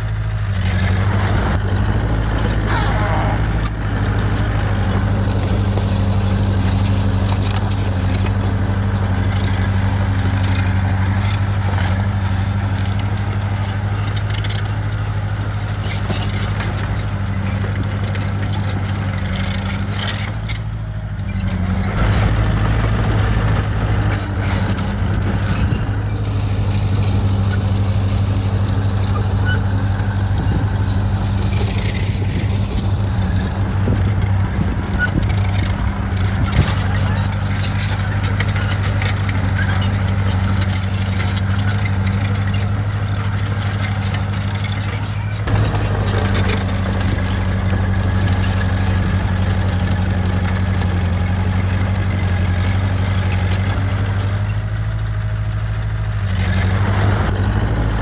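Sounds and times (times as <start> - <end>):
bulldozer diesel engine running: 0.0 - 58.0
metallic clinks and clanks: 24.1 - 54.6.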